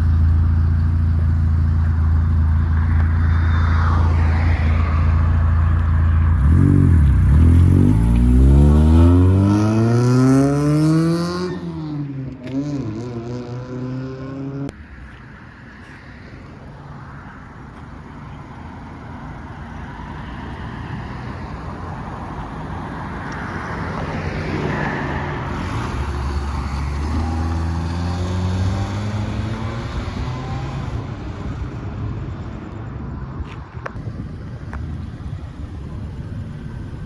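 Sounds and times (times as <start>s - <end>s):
car driving by: 2.3s - 14.7s, 23.6s - 31.6s.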